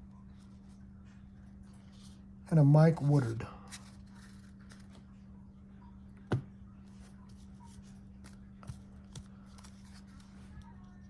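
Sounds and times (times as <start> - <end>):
baseball cards tapping: 6.3 - 6.5, 8.2 - 10.6.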